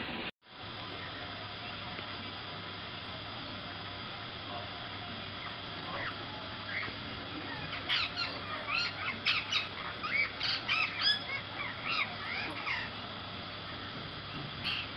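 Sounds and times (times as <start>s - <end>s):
birds chirping: 5.0s - 14.9s.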